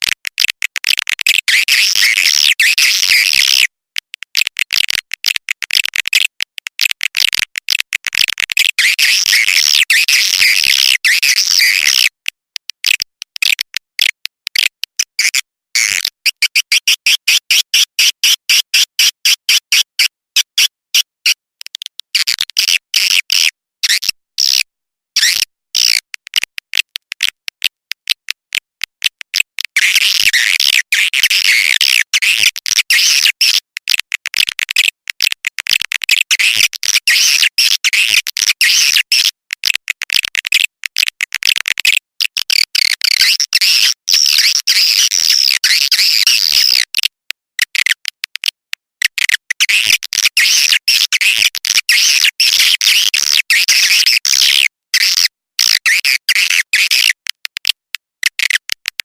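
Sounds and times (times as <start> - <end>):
rapid dry clicks: 0.0 - 1.6, 3.6 - 8.8, 11.9 - 15.2, 25.8 - 43.9, 45.4 - 50.4, 56.4 - 59.0.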